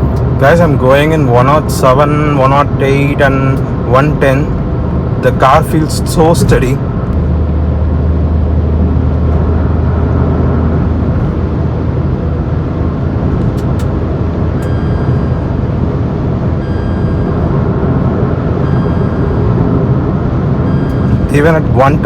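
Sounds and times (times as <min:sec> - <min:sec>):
car cabin engine and road noise: 0:00.0 - 0:22.0
low hum: 0:00.0 - 0:22.0
faint short beeps: 0:14.6 - 0:15.5, 0:18.6 - 0:19.5, 0:20.7 - 0:21.4.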